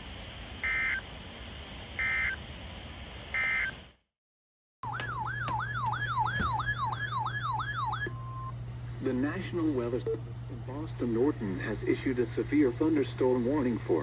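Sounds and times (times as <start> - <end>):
broadcast hiss: 0.0 - 4.0, 8.9 - 14.0
low hum: 4.8 - 14.0.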